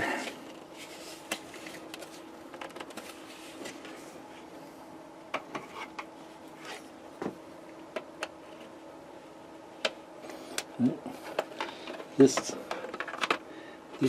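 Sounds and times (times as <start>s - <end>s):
faint steady hum: 0.0s - 14.0s.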